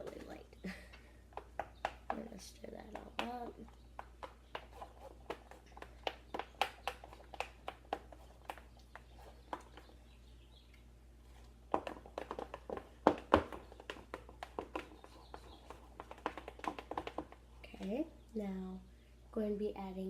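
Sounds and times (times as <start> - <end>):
utensil stirring slime in bowl: 1.3 - 10.3, 11.2 - 18.1.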